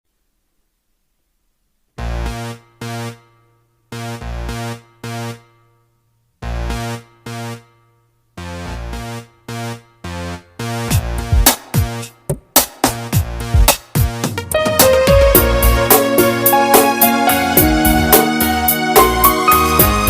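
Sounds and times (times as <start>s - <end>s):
synthesizer chords: 6.4s - 7.6s, 12.8s - 20.0s
drum machine beat: 10.8s - 20.0s
deep bass: 14.6s - 16.7s, 17.3s - 20.0s.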